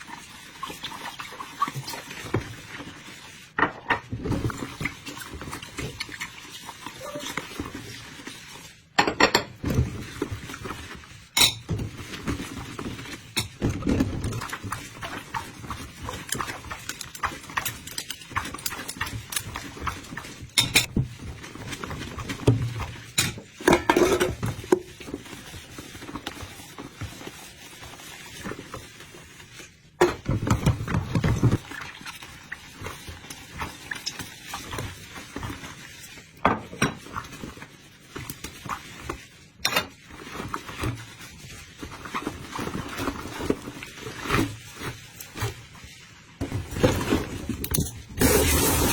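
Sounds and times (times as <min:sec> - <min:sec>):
dishes and utensils clinking: 0:09.0 - 0:09.8, 0:11.4 - 0:11.8, 0:20.6 - 0:21.0, 0:23.2 - 0:24.7.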